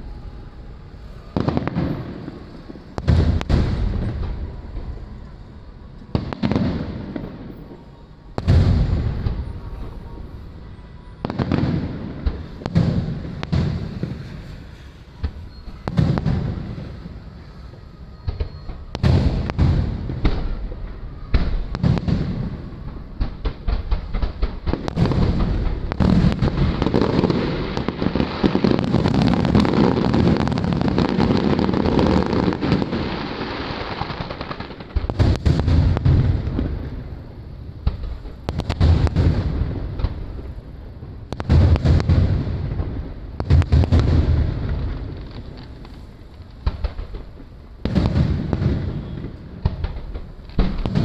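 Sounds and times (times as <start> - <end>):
fireworks bursting with deep booms: 0.0 - 51.0
fireworks crackling: 0.0 - 51.0.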